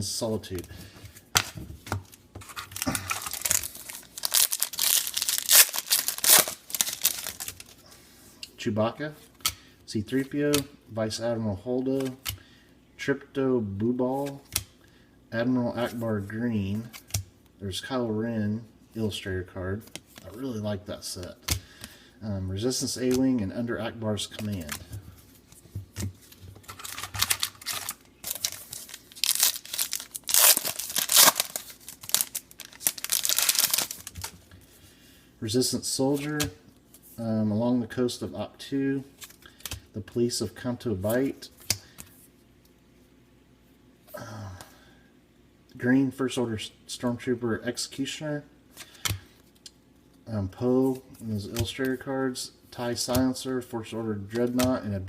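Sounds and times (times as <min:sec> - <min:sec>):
plastic wrapper tearing and crinkling: 0:02.5 - 0:07.7, 0:26.6 - 0:34.3.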